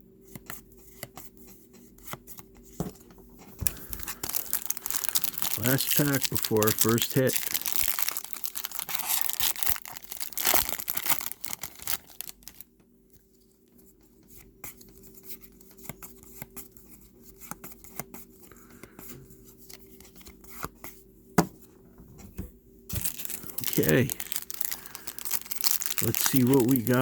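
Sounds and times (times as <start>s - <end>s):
cards rustling and ticking: 3.4s - 12.6s, 22.9s - 27.0s
wrapper tearing and crinkling: 3.6s - 12.6s, 22.9s - 27.0s.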